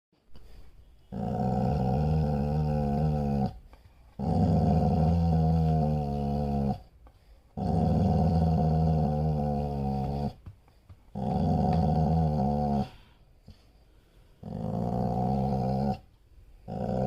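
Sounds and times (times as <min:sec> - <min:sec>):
dog growling: 0:01.1 - 0:03.6, 0:04.2 - 0:06.9, 0:07.6 - 0:10.4, 0:11.1 - 0:13.0, 0:14.4 - 0:17.0.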